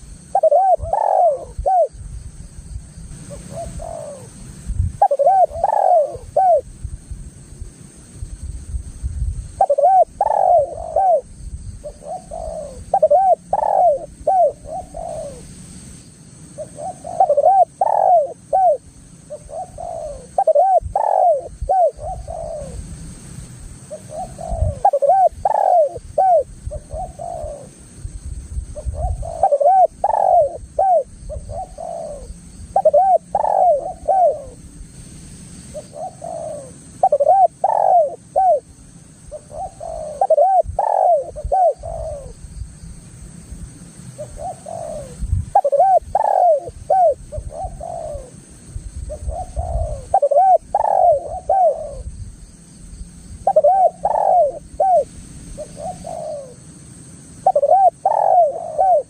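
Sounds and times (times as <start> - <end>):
dove cooing: 0.0 - 2.0, 3.2 - 6.7, 9.5 - 15.5, 16.6 - 22.9, 23.9 - 27.8, 28.8 - 34.6, 35.7 - 42.4, 44.2 - 48.4, 49.1 - 52.1, 53.4 - 56.6, 57.4 - 59.0.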